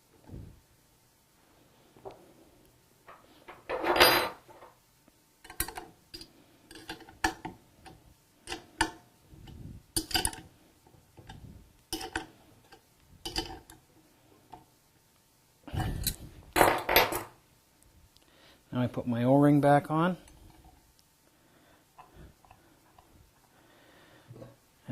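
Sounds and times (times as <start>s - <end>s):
metal parts and tools clinking: 13.2s - 13.8s.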